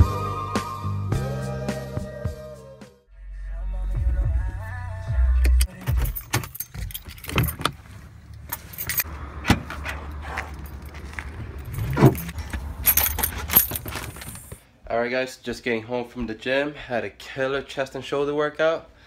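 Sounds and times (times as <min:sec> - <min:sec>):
background music: 0:00.0 - 0:07.0
keys jangling: 0:05.6 - 0:09.1, 0:10.3 - 0:14.6.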